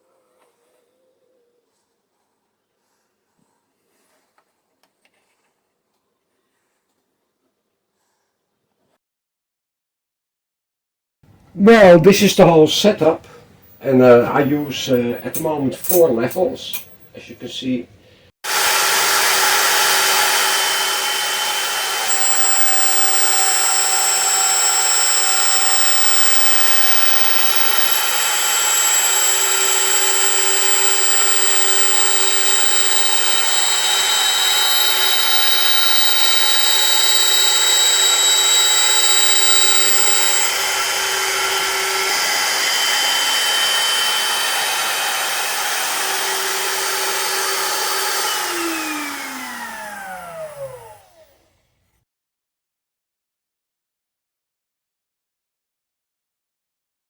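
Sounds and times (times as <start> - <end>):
router spinning down: 18.5 - 51.5
router motor whining: 18.5 - 51.6.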